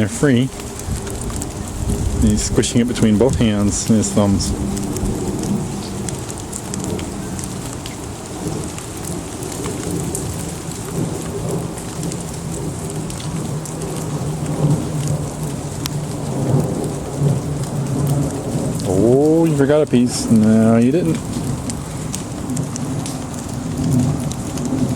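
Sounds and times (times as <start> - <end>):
low rumble: 0.0 - 5.8
drops ticking: 0.0 - 24.9
steady rain shower: 0.0 - 24.9.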